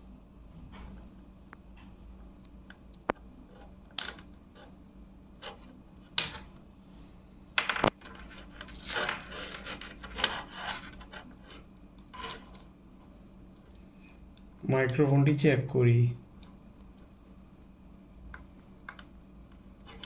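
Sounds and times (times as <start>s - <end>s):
rustling and scraping: 7.8s - 13.9s.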